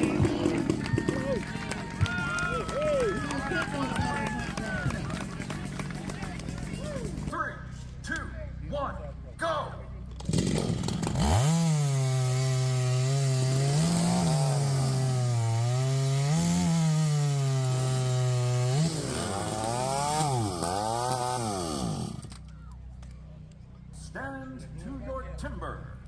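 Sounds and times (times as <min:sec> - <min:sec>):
chainsaw cutting log: 0:00.0 - 0:07.3, 0:10.2 - 0:22.4.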